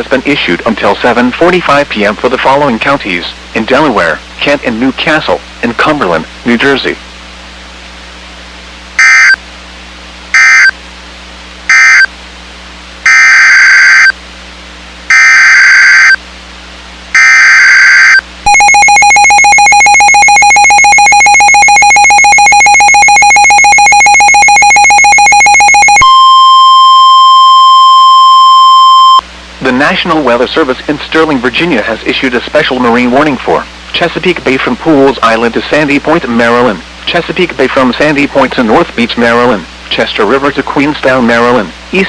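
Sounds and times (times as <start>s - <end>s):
steady single-pitch alert tone: 9.0s - 9.4s, 10.4s - 10.8s, 11.7s - 12.1s, 13.1s - 14.2s, 15.1s - 16.2s, 17.1s - 29.2s
two-tone attention signal: 9.0s - 9.4s, 10.4s - 10.7s, 13.1s - 14.2s, 15.1s - 16.2s, 17.2s - 29.2s.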